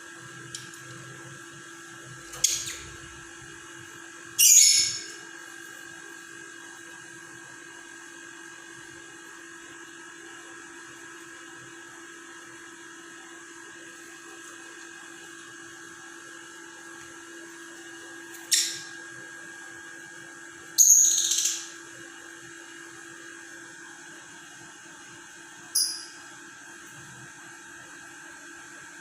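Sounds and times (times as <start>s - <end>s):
electrical whine and hum: 0.0s - 29.0s
lovebird shrill calls: 4.4s - 5.1s.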